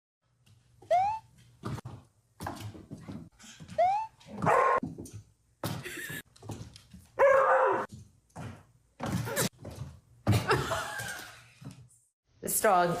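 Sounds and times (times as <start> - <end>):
dog yipping and barking: 3.8 - 4.8, 7.2 - 7.9.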